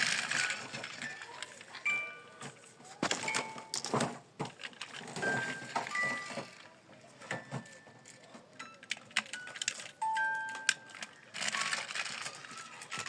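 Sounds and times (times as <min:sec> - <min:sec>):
plastic toy vehicles clattering: 0:00.0 - 0:13.0
electronic toy beeps: 0:05.2 - 0:06.6, 0:07.3 - 0:11.8.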